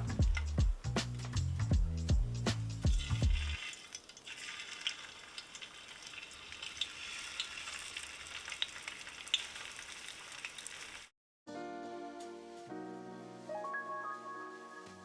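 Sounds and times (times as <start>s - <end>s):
oil popping and crackling: 2.9s - 11.1s
oil sizzling in a frying pan: 2.9s - 11.1s.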